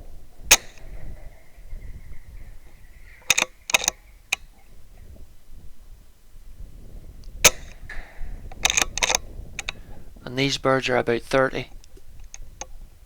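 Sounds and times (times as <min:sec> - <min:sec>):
air rifle shot: 0:00.4 - 0:04.0, 0:07.3 - 0:10.0.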